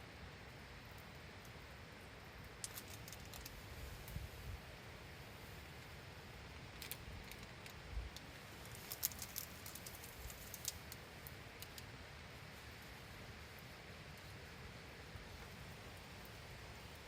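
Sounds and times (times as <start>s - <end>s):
faint steady hiss: 0.0s - 17.0s
campfire crackling: 0.1s - 17.0s.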